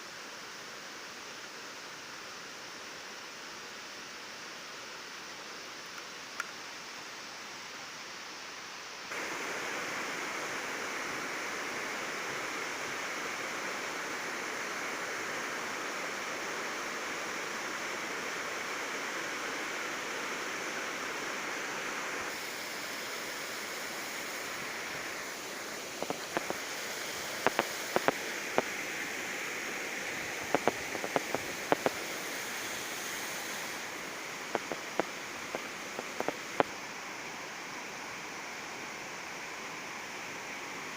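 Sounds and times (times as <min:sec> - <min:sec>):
waterfall rushing: 0:09.1 - 0:38.4
sharp clicks: 0:27.4 - 0:28.7, 0:30.3 - 0:32.2, 0:34.5 - 0:36.7.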